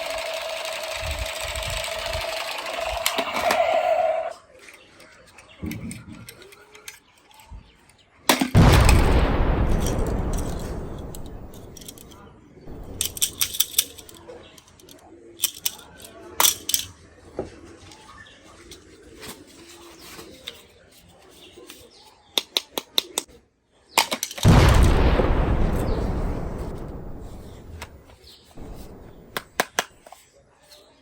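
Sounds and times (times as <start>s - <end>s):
toy gun shots: 0.0s - 4.3s, 8.3s - 14.3s, 15.4s - 16.9s, 24.0s - 30.2s
loud echoing bang: 8.5s - 14.0s, 24.4s - 29.7s.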